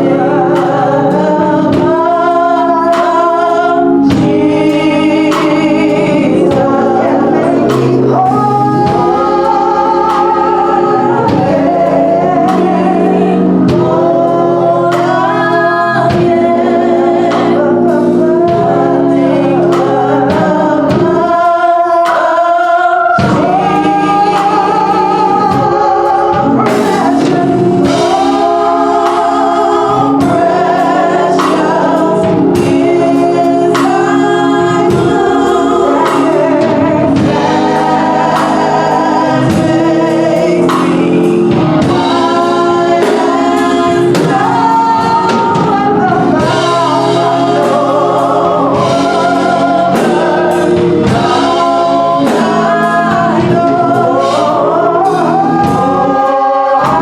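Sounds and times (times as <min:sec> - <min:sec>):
choir singing gospel: 0:00.0 - 0:57.0
instrumental backing with beat: 0:00.0 - 0:57.0.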